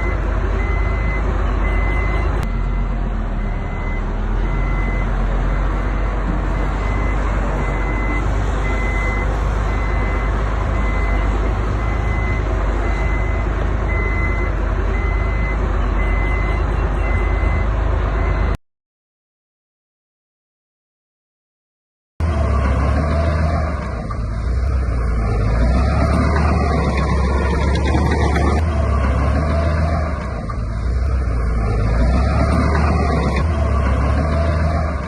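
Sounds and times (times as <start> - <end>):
diesel engine running: 0.0 - 18.6, 22.2 - 35.0
reverse warning alarm beeping: 0.0 - 18.6.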